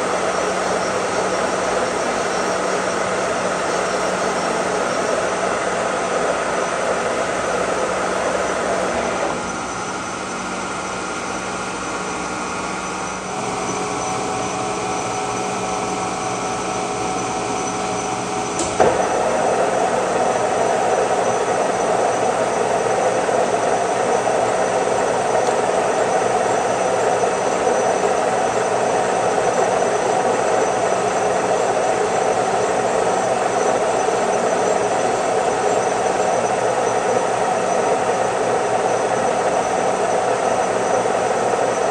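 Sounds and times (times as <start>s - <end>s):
milling machine gearing whine: 0.0s - 41.9s
milling machine running: 0.0s - 41.9s
sharp machine clunk: 18.5s - 19.2s.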